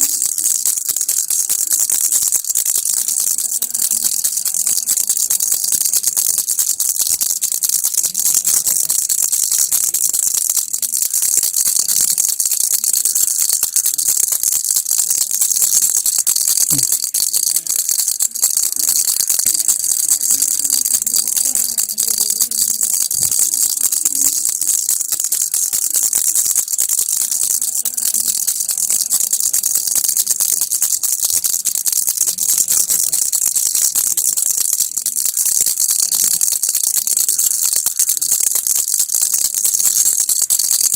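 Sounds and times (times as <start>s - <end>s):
baby rattle shaken: 0.0s - 40.9s.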